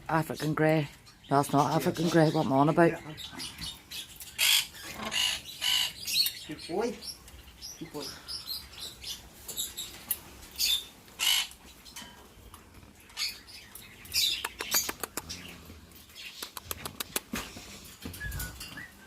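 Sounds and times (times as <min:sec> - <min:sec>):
parrots squawking: 0:03.0 - 0:07.2, 0:10.5 - 0:12.1
sharp clicks: 0:14.3 - 0:15.4, 0:16.3 - 0:17.3.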